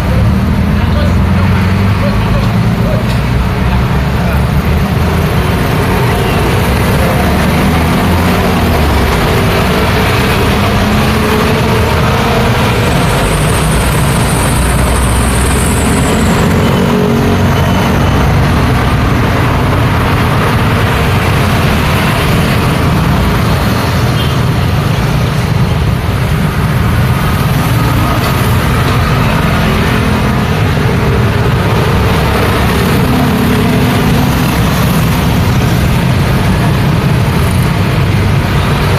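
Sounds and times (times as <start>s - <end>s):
passing vehicle engines: 0.0s - 38.9s.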